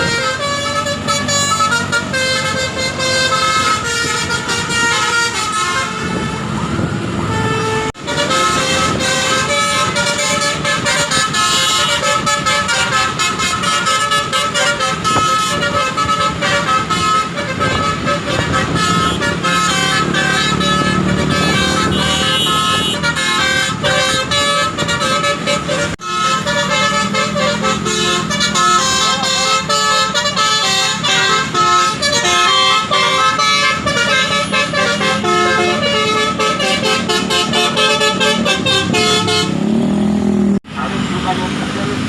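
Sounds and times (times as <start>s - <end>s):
bus horn playing melody: 0.0s - 40.1s.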